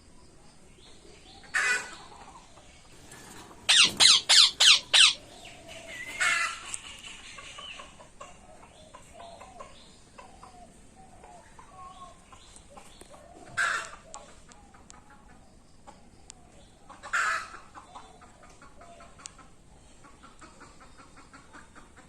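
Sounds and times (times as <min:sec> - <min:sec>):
parrots chattering: 0:03.0 - 0:06.4
parrots screeching: 0:03.1 - 0:06.4.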